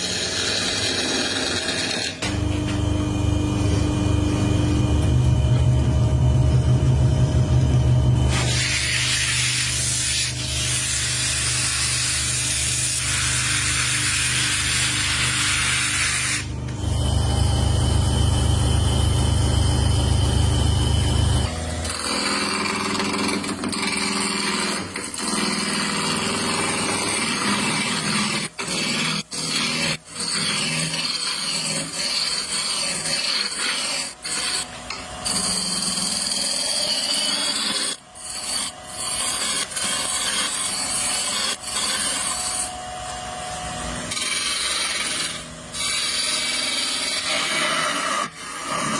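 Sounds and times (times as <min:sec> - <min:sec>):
machine hum with hiss: 0:02.2 - 0:24.4
heavy low rumble: 0:03.2 - 0:08.4
rubbing and rasping on wood: 0:22.6 - 0:42.7.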